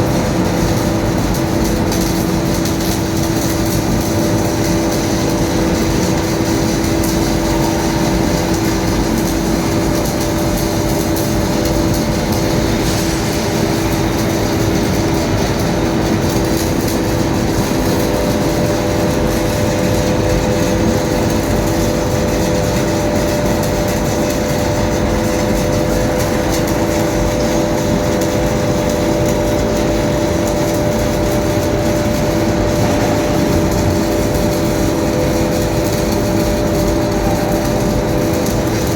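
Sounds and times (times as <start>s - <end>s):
machinery droning: 0.0s - 38.9s.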